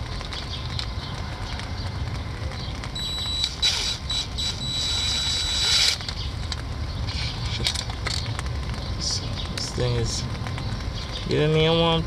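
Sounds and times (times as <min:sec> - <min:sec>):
steady low hum: 0:00.0 - 0:12.0
power drill whining: 0:03.1 - 0:06.0.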